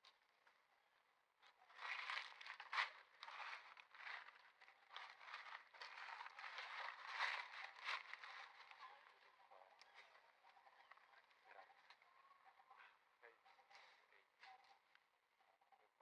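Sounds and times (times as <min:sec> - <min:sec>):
rustling and crackling: 0:01.4 - 0:12.4.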